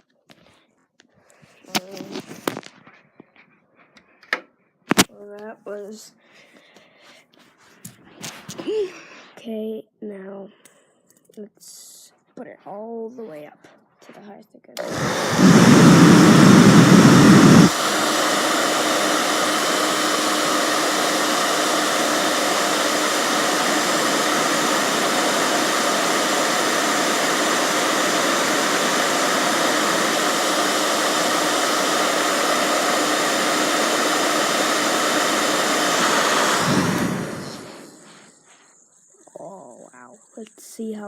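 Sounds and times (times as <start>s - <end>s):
hair dryer blowing air: 14.8s - 38.4s.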